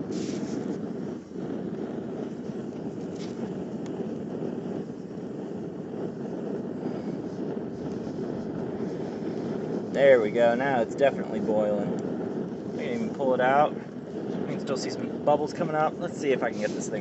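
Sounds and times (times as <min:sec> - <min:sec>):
forge rushing noise: 0:00.0 - 0:17.0.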